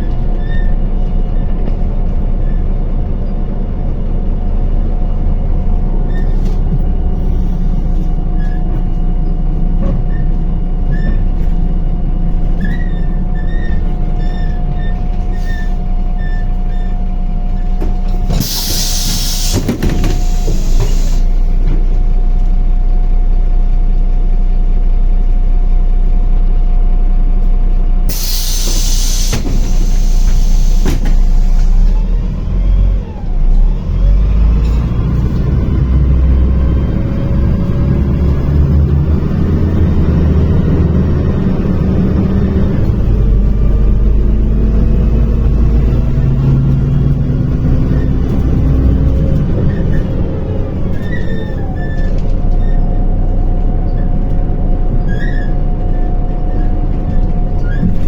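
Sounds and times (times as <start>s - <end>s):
bus engine whining: 0.0s - 58.0s
compressed air hisses: 18.4s - 21.4s, 28.1s - 31.7s.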